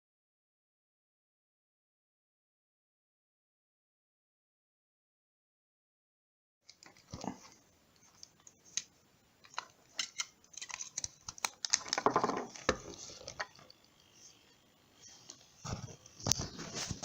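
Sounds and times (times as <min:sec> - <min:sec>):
rustling of small parts: 0:09.4 - 0:14.4.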